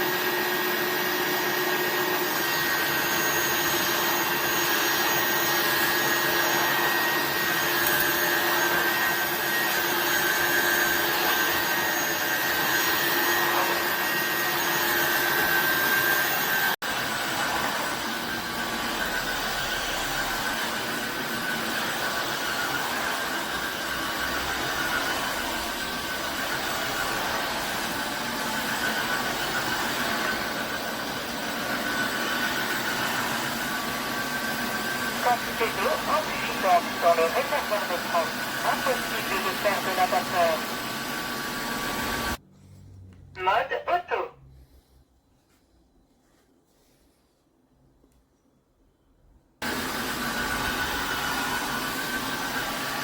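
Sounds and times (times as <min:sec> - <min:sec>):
floor cleaner suction motor whine: 0:00.0 - 0:42.4, 0:49.6 - 0:53.0.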